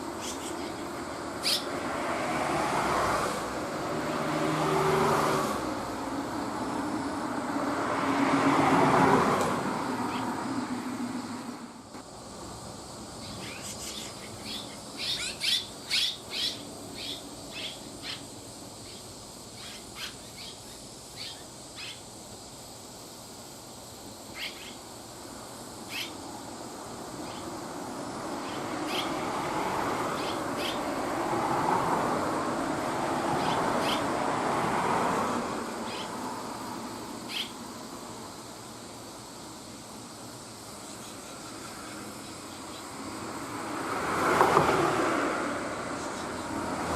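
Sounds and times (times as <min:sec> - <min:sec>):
swallows chirping: 0:00.0 - 0:01.8, 0:13.2 - 0:22.1, 0:24.3 - 0:24.9, 0:25.8 - 0:26.2, 0:27.2 - 0:27.6, 0:28.4 - 0:29.2, 0:30.1 - 0:31.0, 0:33.4 - 0:34.1, 0:35.8 - 0:36.2, 0:37.2 - 0:37.6
passing vehicle: 0:00.9 - 0:11.9, 0:27.1 - 0:38.3, 0:41.4 - 0:46.9.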